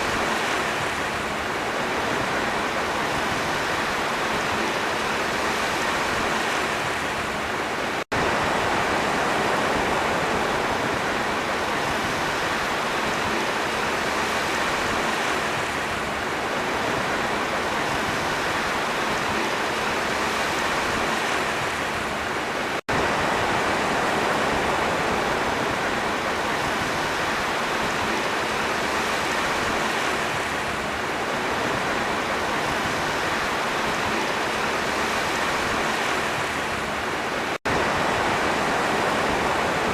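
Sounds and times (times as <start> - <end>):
sea waves washing: 0.0 - 39.9.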